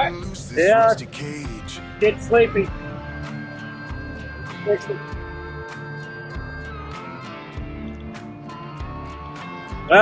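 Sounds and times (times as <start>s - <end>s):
instrumental music with drum beat: 0.0s - 2.0s.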